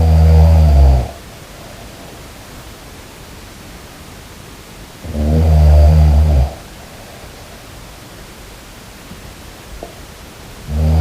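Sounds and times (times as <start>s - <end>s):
low snore: 0.0s - 1.2s, 5.0s - 6.7s, 10.7s - 11.0s
steady hiss: 0.0s - 11.0s.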